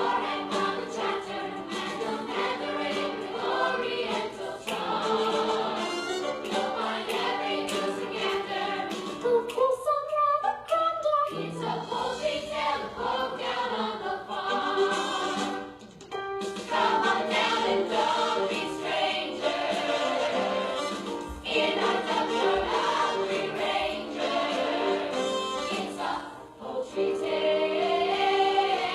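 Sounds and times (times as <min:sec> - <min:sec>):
choir singing: 0:00.0 - 0:09.2, 0:11.3 - 0:15.8, 0:16.7 - 0:28.9.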